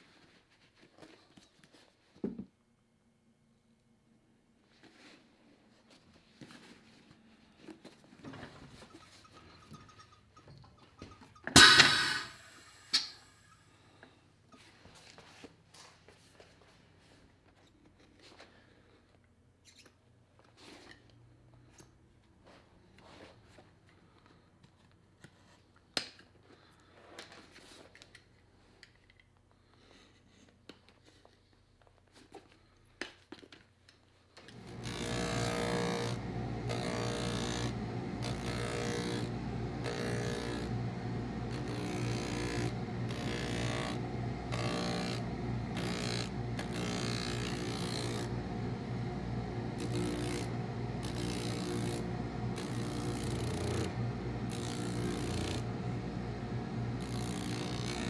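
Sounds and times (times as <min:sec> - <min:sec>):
shoe-repair machine humming: 0:08.4 - 0:13.9, 0:34.4 - 0:58.0.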